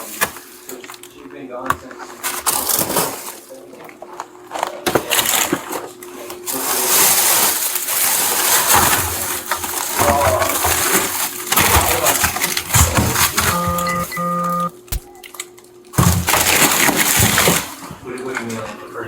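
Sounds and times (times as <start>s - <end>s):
knocks and clicks: 13.0s - 14.7s
two-part electronic beep: 13.2s - 14.7s.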